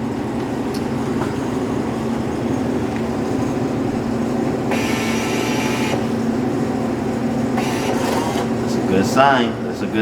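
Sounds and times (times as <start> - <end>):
vending machine humming: 0.0 - 10.0
bill acceptor whirring: 4.6 - 6.3, 7.5 - 9.0.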